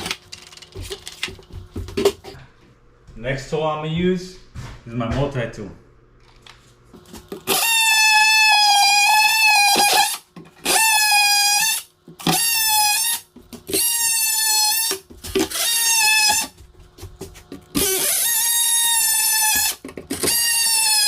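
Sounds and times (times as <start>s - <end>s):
multi-tool cutting whine: 7.3s - 16.6s, 17.7s - 21.0s.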